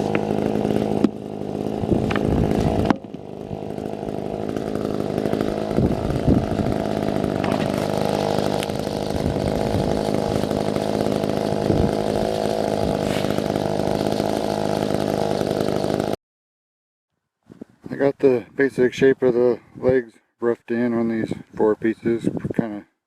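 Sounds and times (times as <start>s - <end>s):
chainsaw cutting log: 0.0s - 16.2s.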